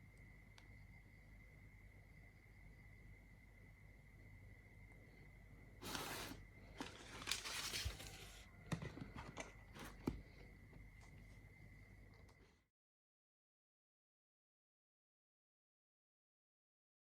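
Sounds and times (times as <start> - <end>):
faint high whine: 0.0 - 12.7
packaging rustling and tearing: 5.8 - 8.4.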